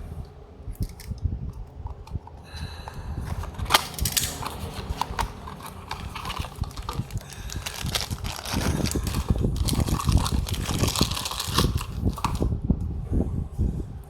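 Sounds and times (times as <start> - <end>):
low rumble: 0.0 - 14.0
toy packaging handling clicks: 2.8 - 12.5.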